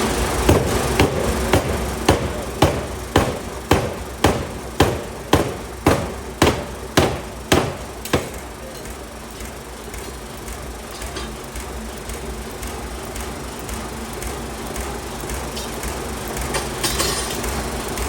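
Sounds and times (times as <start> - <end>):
hammer machinery running: 0.0 - 18.0
forging hammer striking steel: 0.4 - 10.1.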